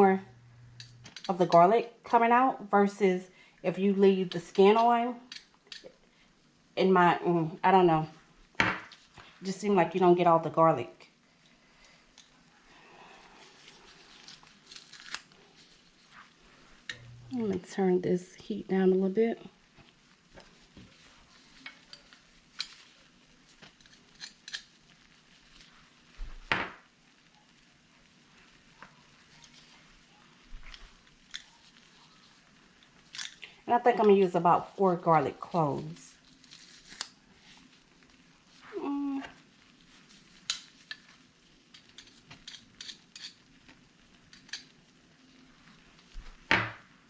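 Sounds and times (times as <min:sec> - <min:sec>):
garlic crunching in press: 0:14.3 - 0:15.3.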